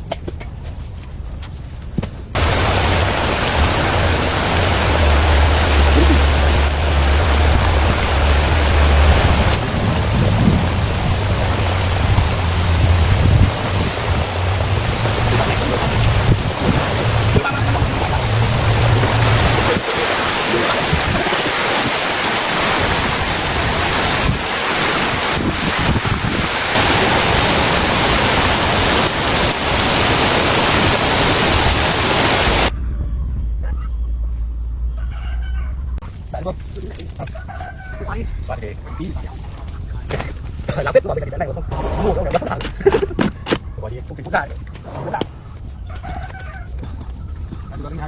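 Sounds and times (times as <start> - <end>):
deep continuous rumble: 0.0 - 21.4, 32.6 - 48.0
heavy rain pouring: 2.4 - 32.7, 37.1 - 45.0.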